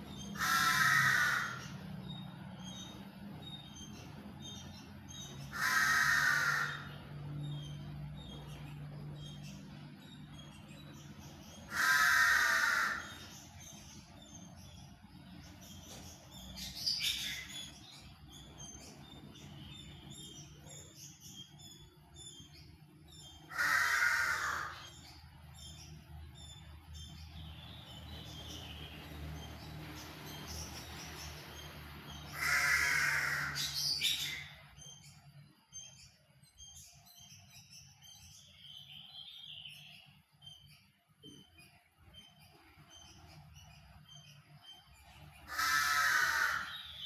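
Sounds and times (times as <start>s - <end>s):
large bird harsh calls: 0.0s - 2.0s, 4.4s - 7.3s, 11.5s - 14.4s, 23.2s - 25.4s, 32.1s - 34.8s, 45.0s - 47.0s
small birds chirping: 0.0s - 47.0s.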